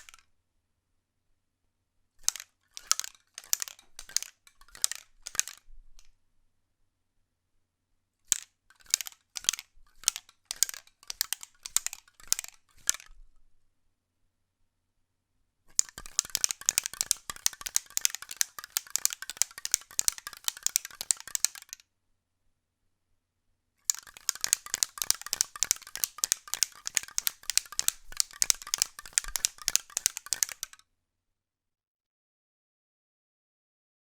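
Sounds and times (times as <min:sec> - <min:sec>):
spray can rattling when shaken: 0:15.8 - 0:21.8, 0:23.9 - 0:30.8.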